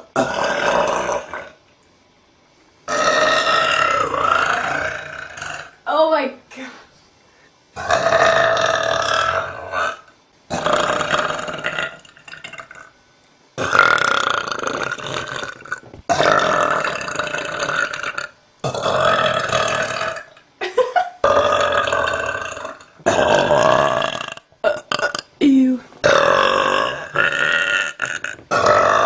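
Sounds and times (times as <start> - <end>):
woman belching: 2.9 - 5.8, 21.2 - 29.0.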